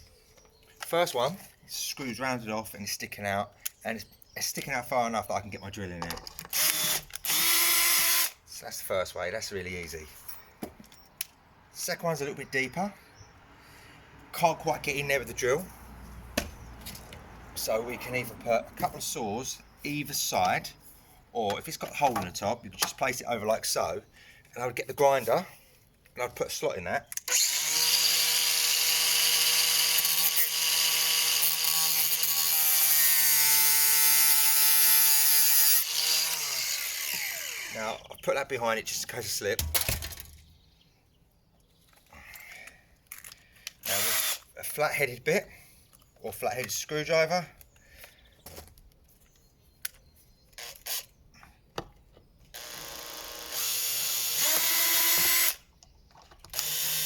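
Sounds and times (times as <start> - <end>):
drill bit clicking into screw: 6.4 - 8.4
power drill whirring: 6.5 - 8.4, 27.3 - 38.0, 43.8 - 44.5, 50.6 - 51.1, 52.5 - 55.6, 56.5 - 57.0
angle grinder cutting metal: 27.3 - 38.0, 43.9 - 44.4, 52.6 - 55.6, 56.6 - 57.0.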